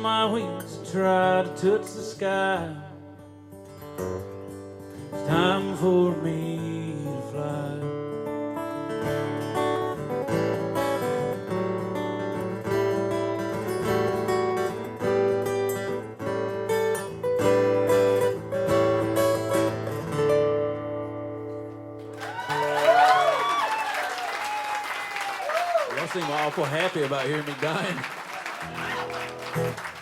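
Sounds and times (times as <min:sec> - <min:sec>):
acoustic guitar playing: 0:00.0 - 0:22.8, 0:26.4 - 0:30.0
audience cheering: 0:22.1 - 0:30.0.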